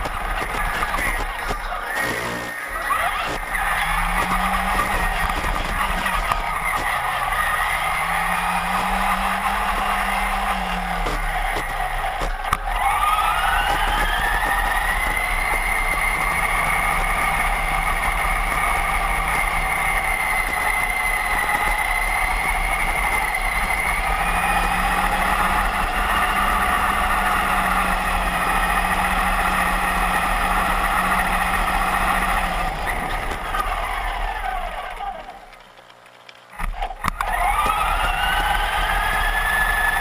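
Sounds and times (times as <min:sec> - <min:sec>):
toy truck motor whining: 0:00.0 - 0:35.8, 0:36.6 - 0:40.0.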